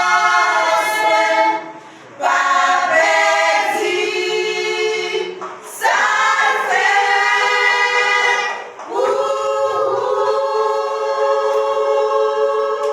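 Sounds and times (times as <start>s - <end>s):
gospel choir singing: 0.0s - 12.9s.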